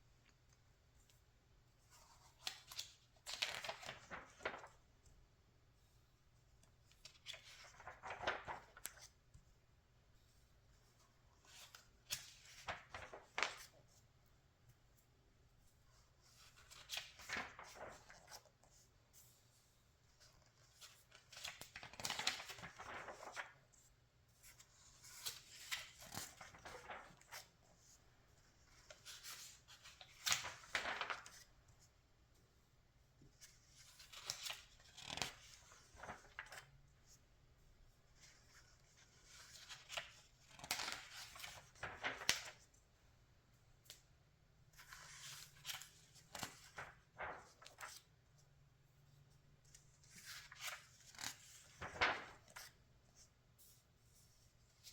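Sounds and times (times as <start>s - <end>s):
magazine pages turning: 1.9s - 4.8s, 6.9s - 9.2s, 11.4s - 13.8s, 16.4s - 18.7s, 20.2s - 23.6s, 24.4s - 28.0s, 28.6s - 31.5s, 33.4s - 37.2s, 38.2s - 42.7s, 44.8s - 48.1s, 49.7s - 52.7s.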